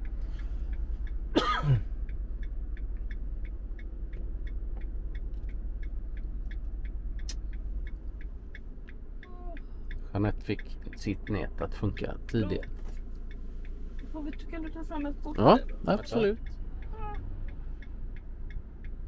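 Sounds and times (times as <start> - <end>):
indicator relay ticking: 0.0 - 19.0
vehicle engine rumble: 0.0 - 19.0
person clearing throat: 1.4 - 1.9.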